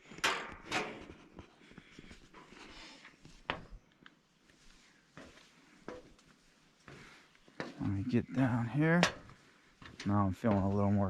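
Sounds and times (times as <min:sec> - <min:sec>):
person breathing: 0:01.2 - 0:03.4, 0:06.9 - 0:07.4
footsteps on metal steps: 0:05.2 - 0:11.0.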